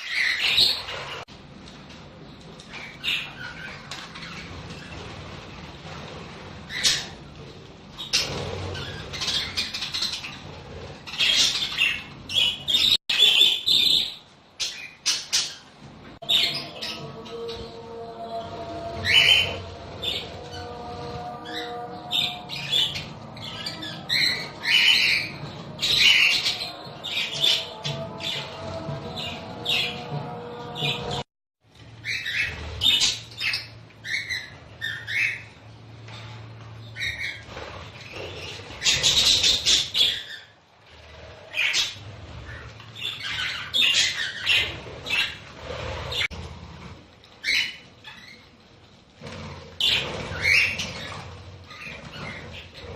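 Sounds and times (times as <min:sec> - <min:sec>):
budgerigars calling and chattering: 0:00.0 - 0:01.3, 0:06.7 - 0:07.3, 0:08.0 - 0:17.8, 0:19.0 - 0:31.2, 0:32.0 - 0:35.6, 0:36.8 - 0:46.4, 0:47.4 - 0:48.5, 0:49.2 - 0:52.9.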